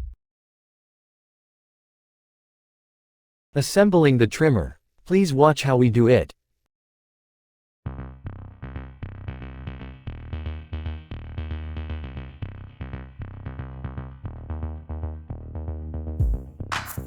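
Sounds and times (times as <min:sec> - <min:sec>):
electronic synth music: 0:08.1 - 0:16.3.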